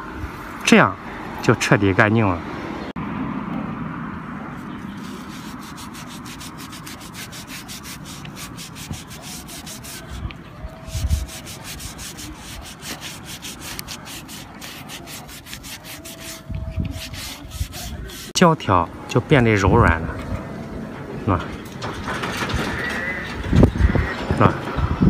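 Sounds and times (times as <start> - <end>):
sponge scrubbing rubber blade: 5.0 - 18.4.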